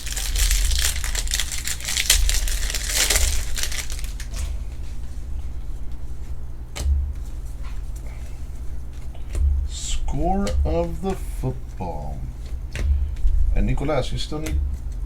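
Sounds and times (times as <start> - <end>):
cards in plastic sleeves flipped: 0.0 - 4.5.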